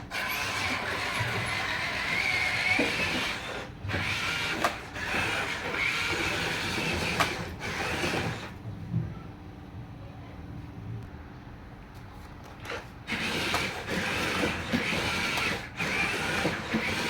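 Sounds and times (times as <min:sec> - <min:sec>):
small electric motors whining: 0:00.0 - 0:08.6, 0:12.6 - 0:17.0.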